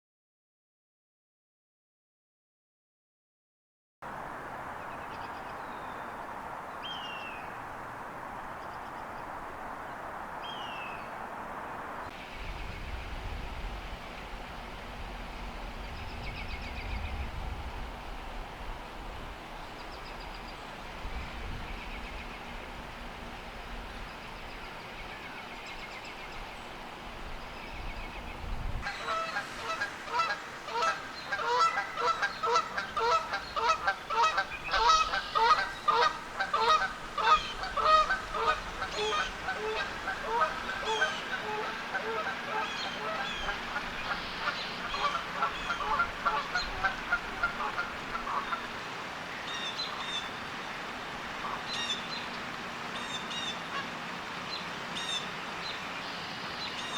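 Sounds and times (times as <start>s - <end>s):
geese honking: 28.8s - 52.3s.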